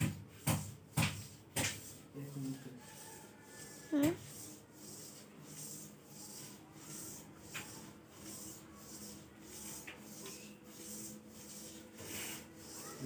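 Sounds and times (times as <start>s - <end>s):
rhythmic rubbing swish: 0.0s - 13.0s.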